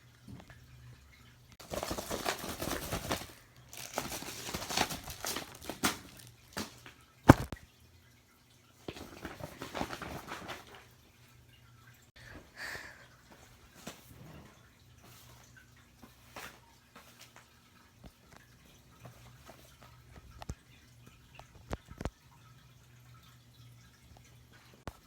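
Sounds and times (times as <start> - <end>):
faint fish tank hum: 0.0 - 25.0
binder pages crinkling and rustling: 1.6 - 7.6, 8.8 - 11.0, 13.4 - 14.2, 15.0 - 20.6.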